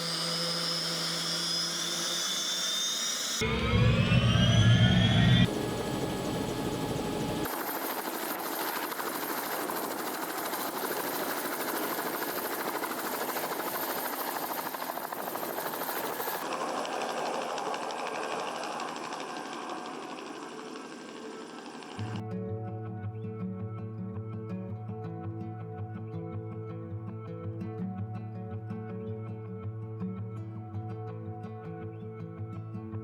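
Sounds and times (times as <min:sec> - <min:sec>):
helicopter rotor and engine: 0:00.0 - 0:22.2
high turbine whine: 0:00.0 - 0:22.2
loud low rumble: 0:03.4 - 0:06.5.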